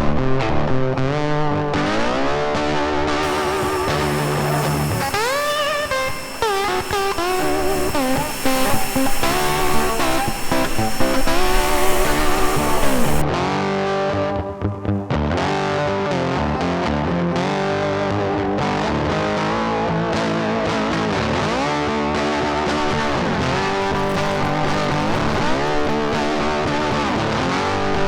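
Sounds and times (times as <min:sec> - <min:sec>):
distorted electric guitar music: 0:00.0 - 0:14.6, 0:22.8 - 0:28.0
loud hiss: 0:03.2 - 0:13.2, 0:22.8 - 0:28.0.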